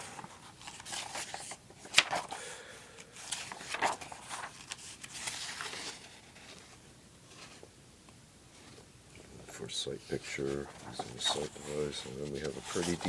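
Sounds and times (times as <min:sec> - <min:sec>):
paper pages turning: 0:00.0 - 0:02.4, 0:03.2 - 0:07.6, 0:09.5 - 0:13.0.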